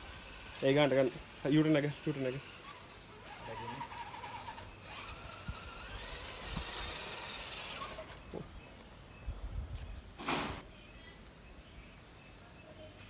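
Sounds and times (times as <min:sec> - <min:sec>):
small electric motor whining: 0:00.0 - 0:08.5.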